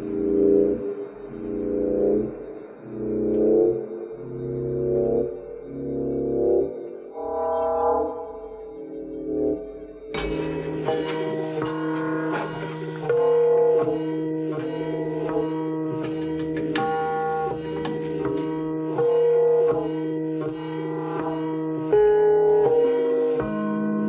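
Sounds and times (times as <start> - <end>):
held drone: 0.0 - 21.4.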